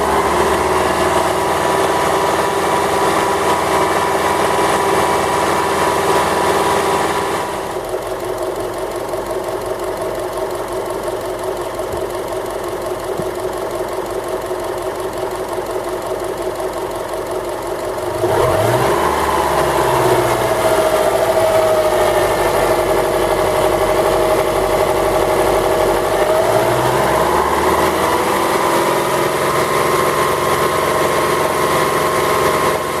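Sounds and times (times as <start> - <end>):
car engine idling with knock: 7.7 - 28.3.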